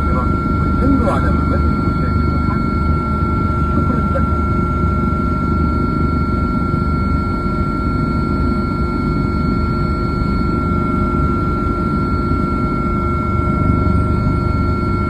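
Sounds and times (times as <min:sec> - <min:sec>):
helicopter rotor rumble: 0:00.0 - 0:15.0
turbine whine: 0:00.0 - 0:15.0.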